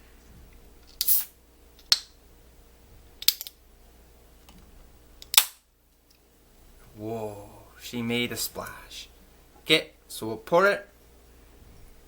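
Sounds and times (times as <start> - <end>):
can seal cracking with hiss: 0.9 - 1.3, 5.2 - 5.6
can tab clicks and snaps: 0.9 - 2.1, 5.2 - 5.6.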